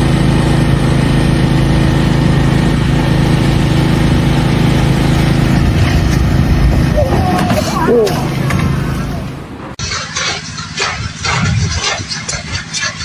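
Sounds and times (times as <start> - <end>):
engine running steadily: 0.0 - 9.8.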